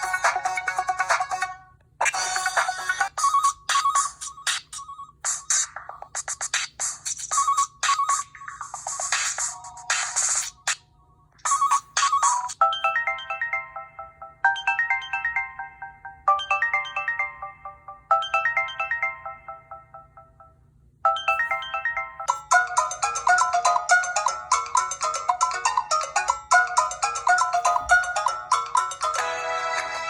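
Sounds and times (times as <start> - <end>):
electronic ringtone: 11.5 - 30.0.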